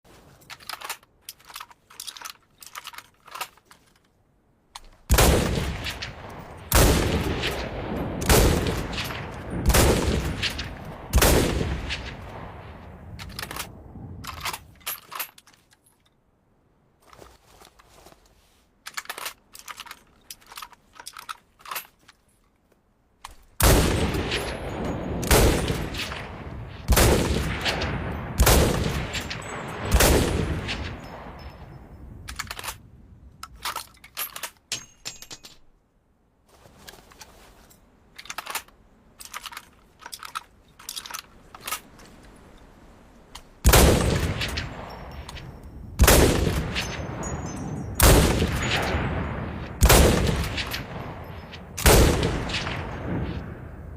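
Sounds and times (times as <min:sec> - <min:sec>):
small metallic clicks: 0:00.2 - 0:05.1, 0:13.1 - 0:16.2, 0:18.8 - 0:24.6, 0:30.6 - 0:35.8, 0:36.9 - 0:43.6
rifle shots with echo: 0:05.1 - 0:13.6, 0:23.6 - 0:31.9, 0:43.6 - 0:47.3, 0:48.0 - 0:53.9.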